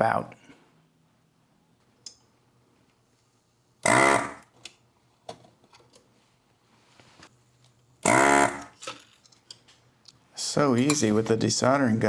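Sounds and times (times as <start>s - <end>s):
vacuum pump buzzing: 3.8s - 4.5s, 8.0s - 8.8s.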